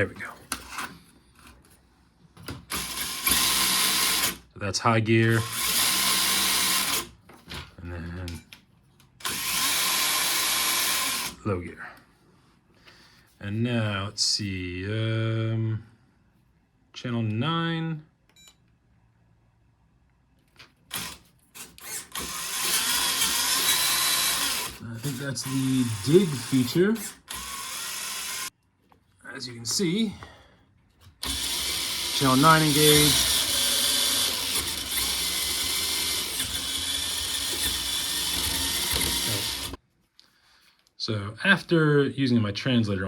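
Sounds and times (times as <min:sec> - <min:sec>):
electric motor and gear noise: 0:02.7 - 0:04.4, 0:05.3 - 0:07.1, 0:09.2 - 0:11.4, 0:20.9 - 0:28.5, 0:31.2 - 0:39.8.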